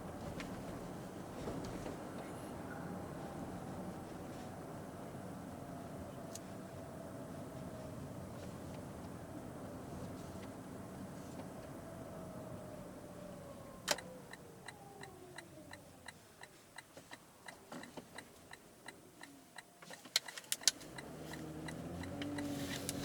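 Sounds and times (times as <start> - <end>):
car drivetrain whine: 0.0 - 19.3, 20.0 - 23.0
light even ticking: 13.9 - 23.0.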